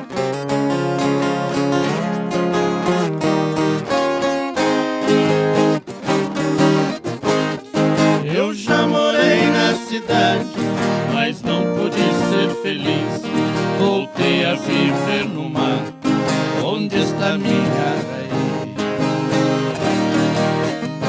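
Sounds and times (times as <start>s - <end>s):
acoustic guitar strumming: 0.0s - 21.0s
viola caipira: 7.4s - 21.0s.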